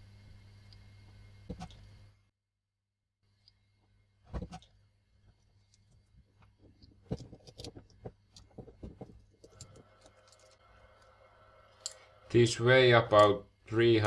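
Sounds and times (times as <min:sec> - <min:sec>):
small hard parts clicking: 0:06.8 - 0:11.1.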